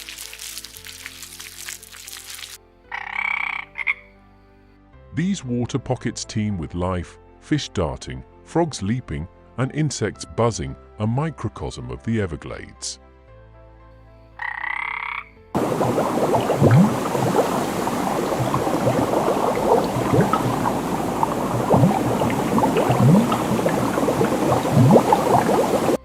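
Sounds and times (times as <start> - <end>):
frog chorus croaking: 2.9 - 4.2, 14.4 - 26.0.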